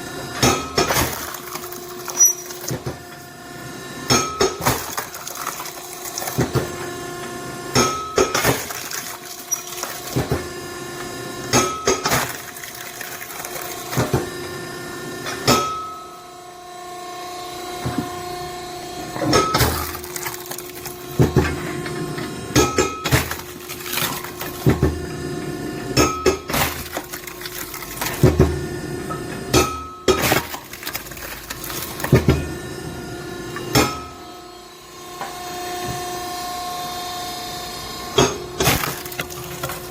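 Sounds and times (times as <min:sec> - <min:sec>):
hydraulic pump humming: 0:00.0 - 0:15.4, 0:17.6 - 0:39.9
wood cracking and clattering: 0:00.8 - 0:02.8, 0:04.6 - 0:06.6, 0:08.4 - 0:10.3, 0:12.0 - 0:14.0, 0:19.6 - 0:21.2, 0:23.0 - 0:24.8, 0:26.5 - 0:28.3, 0:30.1 - 0:32.3, 0:38.6 - 0:39.9.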